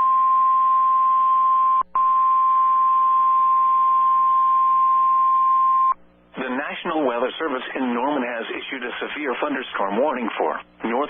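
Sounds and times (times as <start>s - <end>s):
high alarm tone: 0.0s - 6.0s
radio hiss and hum: 1.8s - 11.0s.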